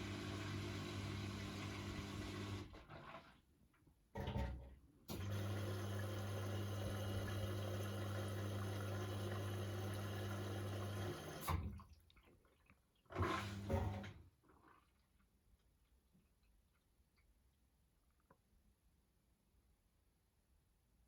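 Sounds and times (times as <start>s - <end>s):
water rushing into washing machine: 0.0s - 3.5s, 4.2s - 14.8s.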